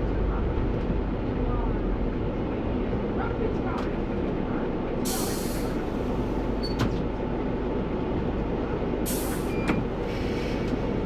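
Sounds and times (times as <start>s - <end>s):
bus diesel engine rumble: 0.0s - 11.0s
air brake hiss: 5.0s - 6.0s, 9.0s - 10.8s.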